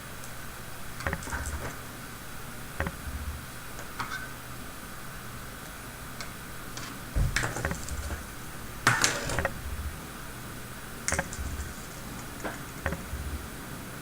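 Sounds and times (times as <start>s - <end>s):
plastic parts clicking together: 11.1s - 11.8s.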